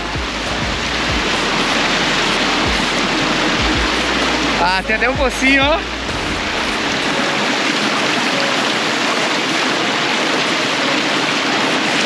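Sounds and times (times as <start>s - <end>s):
water pouring into pool: 6.8s - 12.0s.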